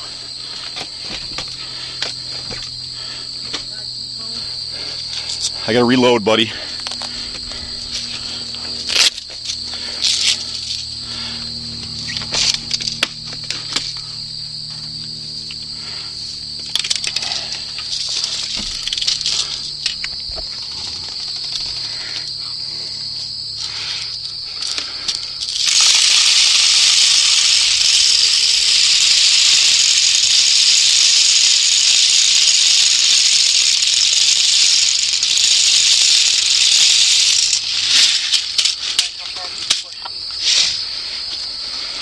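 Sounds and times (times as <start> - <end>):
insects chirring: 0.0 - 42.0
rush of hiss: 25.6 - 39.1.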